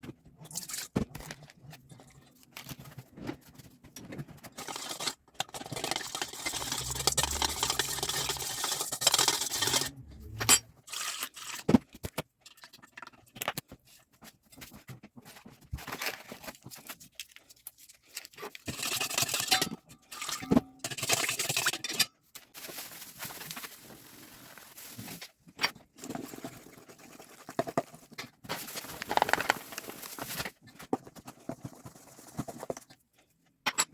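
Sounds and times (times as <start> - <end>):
rustling and scraping: 2.4 - 11.0, 22.4 - 25.8, 27.6 - 33.0.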